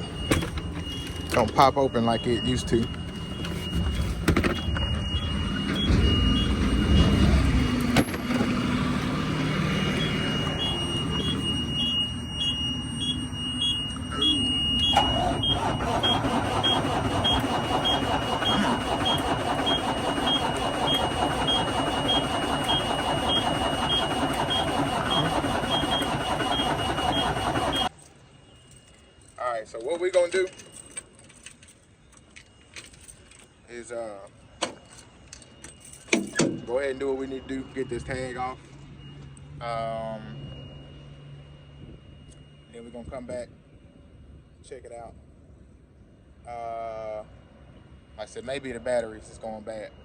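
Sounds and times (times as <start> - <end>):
diesel truck engine idling: 0.0 - 27.9
high electronic beeping: 0.0 - 28.6, 35.8 - 43.2
thin constant tone: 27.9 - 50.0.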